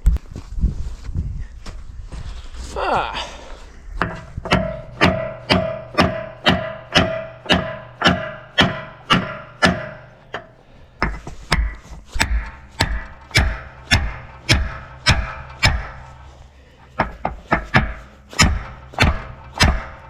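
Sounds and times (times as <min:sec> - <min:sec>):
maul hammering on steel: 0:04.0 - 0:16.3, 0:16.9 - 0:20.0.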